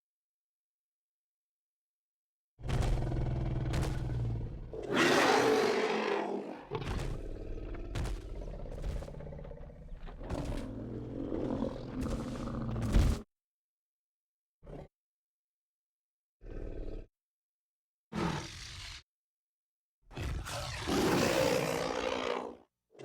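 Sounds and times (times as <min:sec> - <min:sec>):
deep rumbling growls: 0:02.6 - 0:13.2
loud roar: 0:03.1 - 0:06.7, 0:18.1 - 0:19.0, 0:20.2 - 0:22.6.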